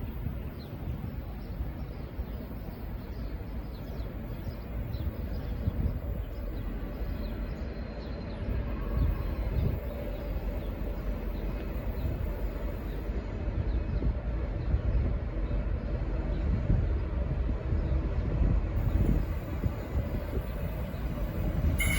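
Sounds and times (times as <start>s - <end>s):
faint bird chirps: 19.7s - 21.9s.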